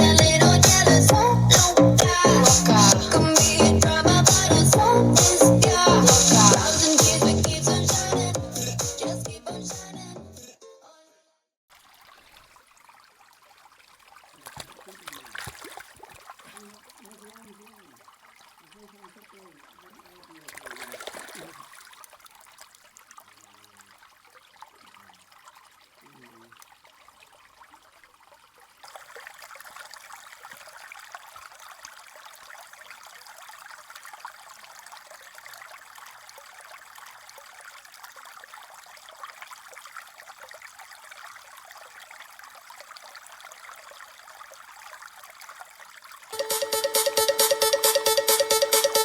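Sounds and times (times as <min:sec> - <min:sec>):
running water trickling: 0:11.7 - 0:46.4.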